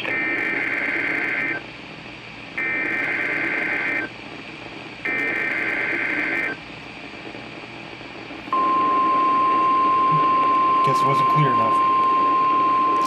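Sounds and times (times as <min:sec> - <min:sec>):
radio hiss: 0:00.0 - 0:01.8, 0:02.5 - 0:09.2, 0:10.0 - 0:11.9
steady warning alarm tone: 0:08.5 - 0:13.0.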